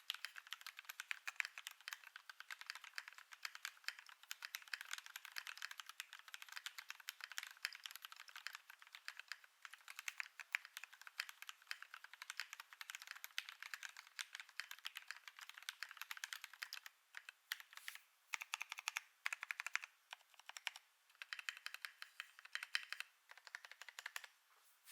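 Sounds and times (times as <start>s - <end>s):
mechanical keyboard typing: 0.0s - 24.3s.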